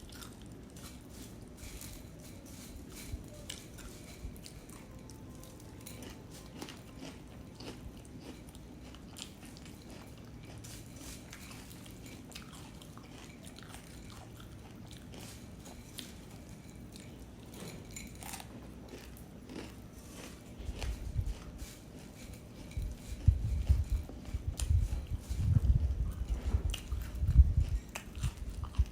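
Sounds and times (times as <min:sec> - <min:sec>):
person chewing puffed rice: 0:00.0 - 0:28.9.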